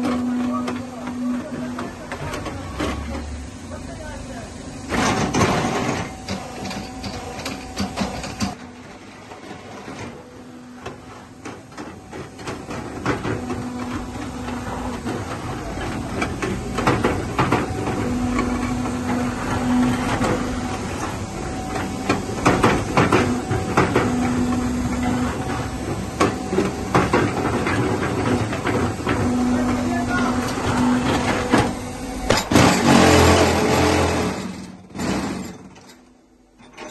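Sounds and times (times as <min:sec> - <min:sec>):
low machine hum: 0:00.0 - 0:34.9
machinery clattering: 0:00.0 - 0:36.9.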